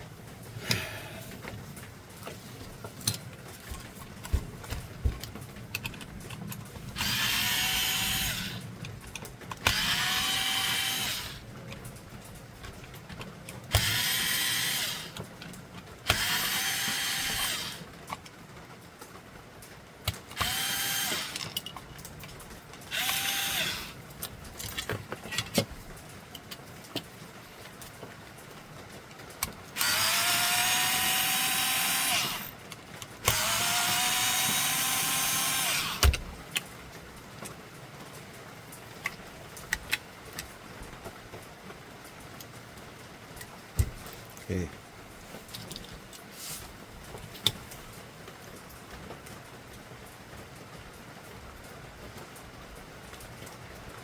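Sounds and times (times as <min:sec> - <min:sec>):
plastic parts clicks and knocks: 0:00.6 - 0:18.4, 0:20.0 - 0:28.2, 0:29.3 - 0:36.7, 0:39.0 - 0:41.2, 0:45.5 - 0:46.2
electric screwdriver whine: 0:07.0 - 0:08.6, 0:09.6 - 0:11.4, 0:13.7 - 0:15.2, 0:16.1 - 0:17.8, 0:20.3 - 0:21.5, 0:22.9 - 0:24.0, 0:29.8 - 0:32.5, 0:33.2 - 0:36.2.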